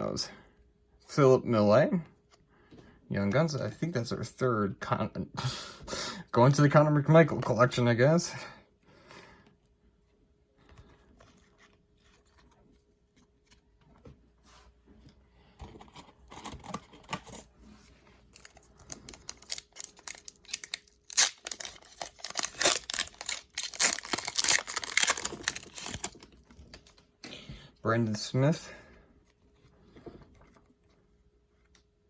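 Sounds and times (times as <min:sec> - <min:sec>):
foil wrapper crinkling and tearing: 0:18.3 - 0:26.4.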